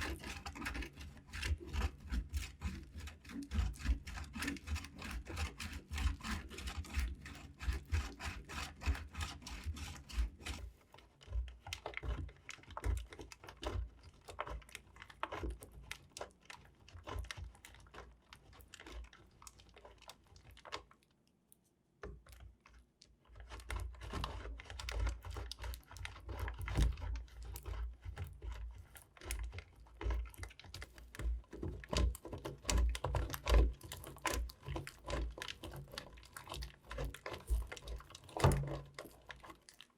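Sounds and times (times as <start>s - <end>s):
knife slicing through soap: 0.0s - 20.7s, 23.3s - 39.9s.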